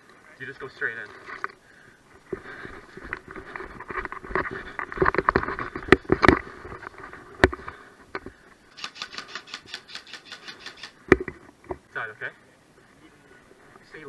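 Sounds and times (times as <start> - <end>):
gear rustling against microphone: 0.7 - 11.8
footsteps: 1.0 - 11.9
sharp cracks: 8.2 - 11.4
quick ticks: 8.7 - 11.0.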